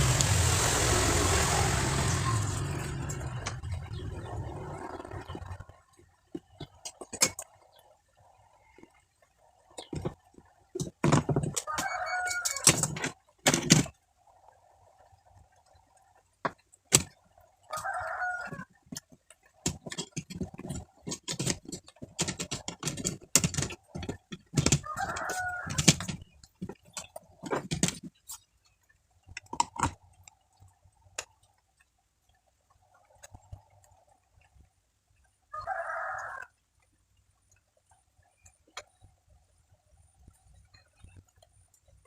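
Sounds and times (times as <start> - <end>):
clicks and knocks of hard objects: 5.3 - 7.9, 9.7 - 14.0, 16.4 - 30.4
rooster crowing: 11.7 - 12.8, 17.7 - 18.7, 24.8 - 26.1, 35.5 - 36.5.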